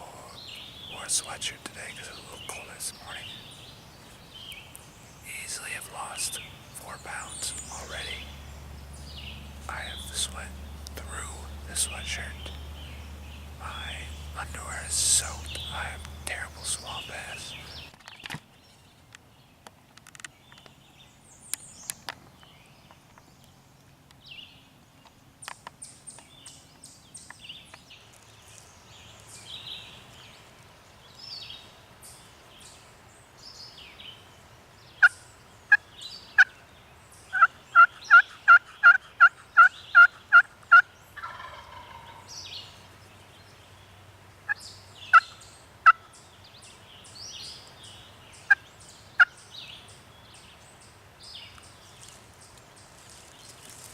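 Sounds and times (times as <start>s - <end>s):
songbirds chirping: 0.0s - 53.9s
wild turkey yelping: 37.3s - 42.3s.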